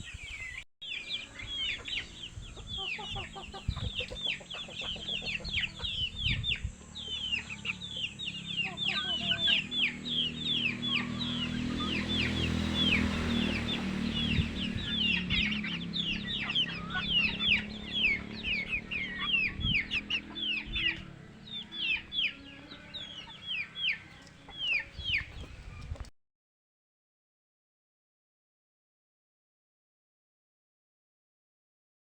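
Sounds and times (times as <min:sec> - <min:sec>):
chicks peeping: 0:00.0 - 0:26.1
low rumble: 0:01.5 - 0:21.6.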